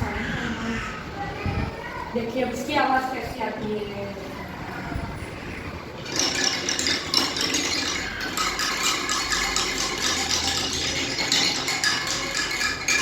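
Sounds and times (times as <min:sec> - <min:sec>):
hand rattle shaken: 0:06.0 - 0:13.0.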